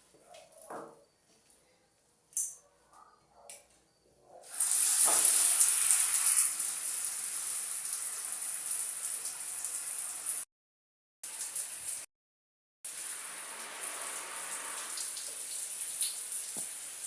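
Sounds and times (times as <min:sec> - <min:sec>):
water running hard: 0:04.6 - 0:10.4.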